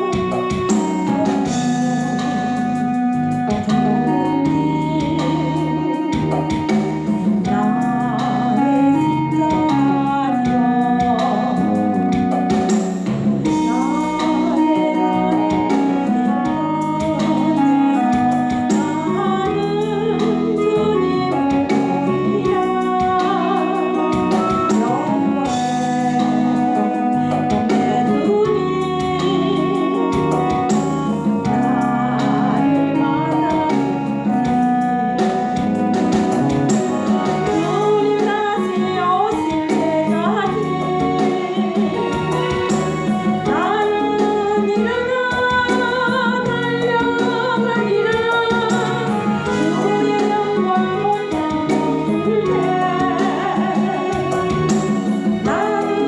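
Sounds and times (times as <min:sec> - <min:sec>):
guitar and band accompaniment: 0:00.0 - 0:56.0
person singing: 0:00.0 - 0:56.0.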